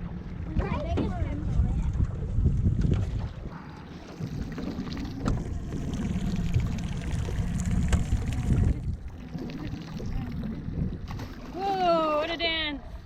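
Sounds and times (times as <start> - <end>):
water around a boat: 0.0 - 13.0
wind: 0.0 - 13.0.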